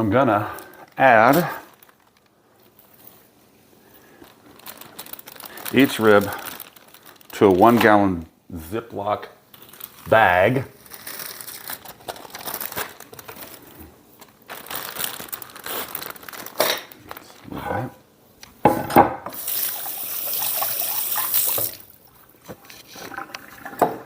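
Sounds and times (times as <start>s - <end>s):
plastic bags rustling and crinkling: 0.2s - 8.2s, 9.4s - 17.9s
kitchen faucet running: 19.3s - 21.9s.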